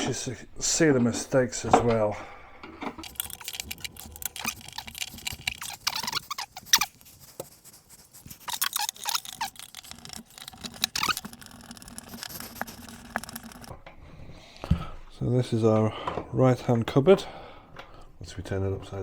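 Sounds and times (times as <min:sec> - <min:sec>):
short squeaks: 0:03.1 - 0:07.0, 0:08.4 - 0:12.7.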